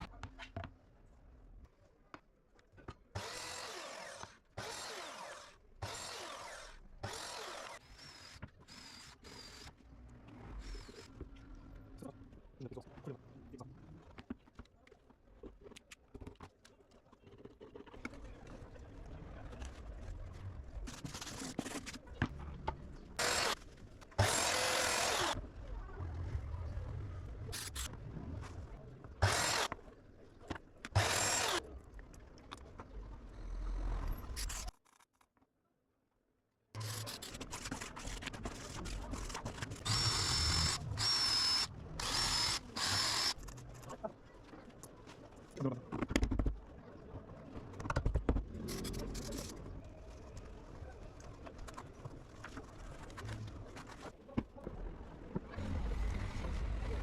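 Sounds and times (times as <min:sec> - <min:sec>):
woodworking power tool: 0:03.2 - 0:09.7, 0:23.2 - 0:23.6, 0:24.2 - 0:25.4, 0:29.2 - 0:29.7, 0:31.0 - 0:31.6, 0:39.8 - 0:43.4.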